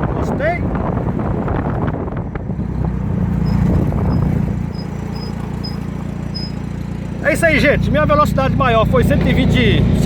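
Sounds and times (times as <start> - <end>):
road noise: 0.0 - 10.0
trike engine running: 2.5 - 10.0.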